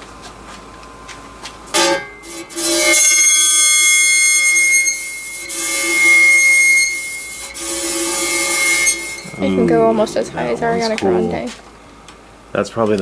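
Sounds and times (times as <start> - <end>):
high-pitched electronic tone: 7.6 - 11.5.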